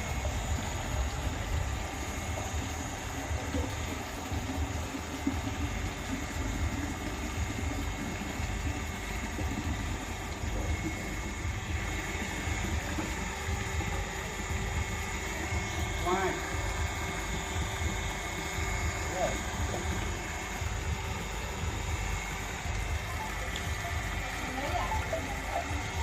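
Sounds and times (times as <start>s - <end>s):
water flowing: 0.0s - 26.0s
water pump running: 0.0s - 26.0s.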